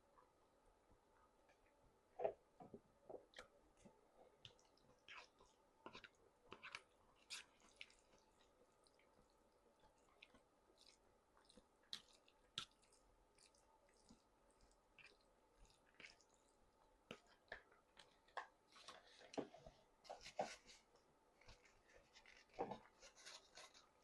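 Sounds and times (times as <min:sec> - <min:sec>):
wet chewing and mouth smacks: 0:03.3 - 0:19.1.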